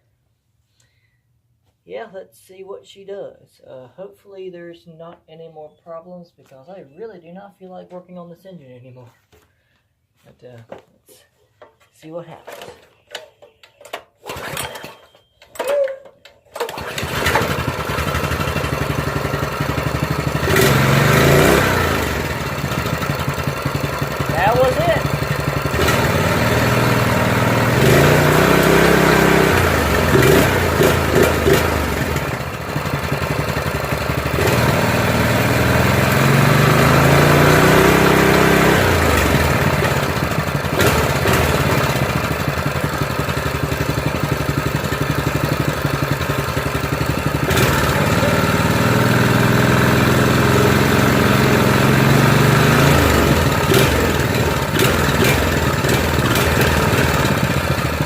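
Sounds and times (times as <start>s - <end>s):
single-cylinder engine revving: 16.6s - 58.0s.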